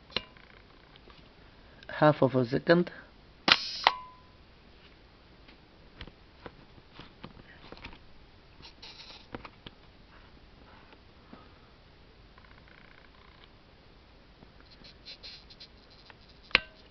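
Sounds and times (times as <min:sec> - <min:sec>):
camera shutter click and whir: 0:03.5 - 0:04.0.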